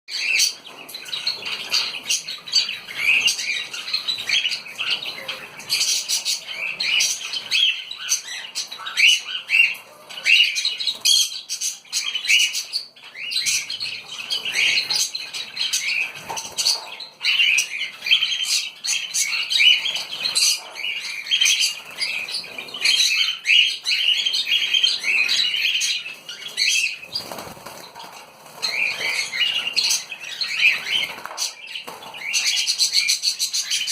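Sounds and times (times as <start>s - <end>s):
small birds chirping: 0.1s - 33.9s
wings flapping: 27.1s - 30.0s, 30.8s - 32.3s.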